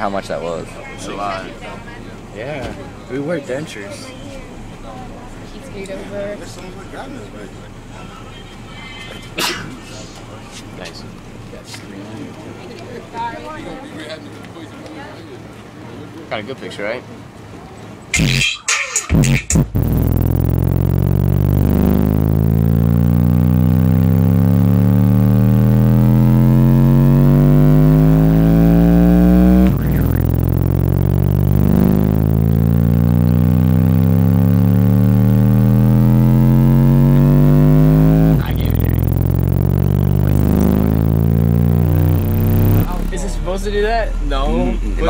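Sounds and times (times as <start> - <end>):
bass-heavy electronic music: 18.2 - 43.8.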